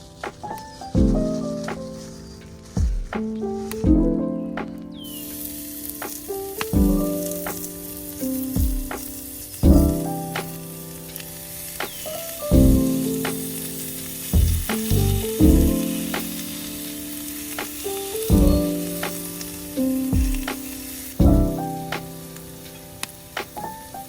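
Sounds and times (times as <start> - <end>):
slow piano music: 0.0 - 24.0
food frying in a pan: 5.0 - 24.0.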